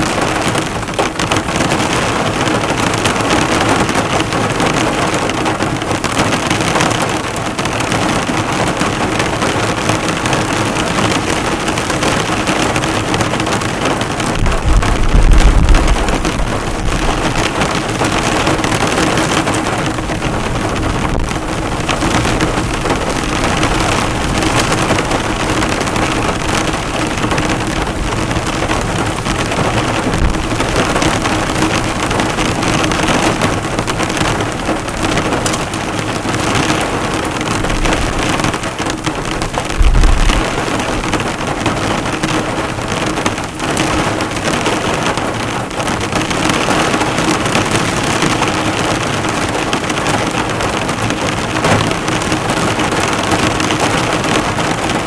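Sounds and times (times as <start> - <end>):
heavy rain drumming on a car: 0.0 - 55.0
low rumble: 14.4 - 17.5, 39.7 - 40.6.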